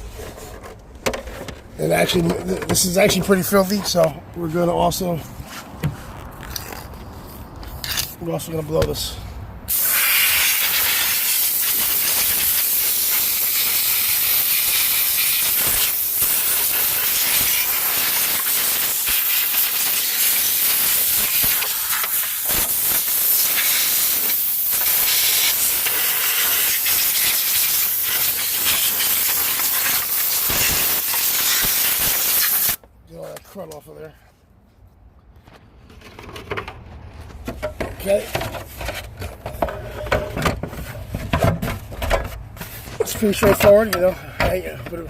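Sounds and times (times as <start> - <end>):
compressed air hissing: 9.7 - 32.8.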